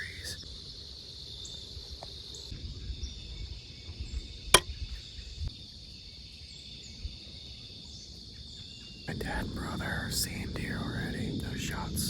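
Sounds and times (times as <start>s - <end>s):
crickets chirping: 0.0s - 12.0s
low rumble: 9.1s - 12.0s.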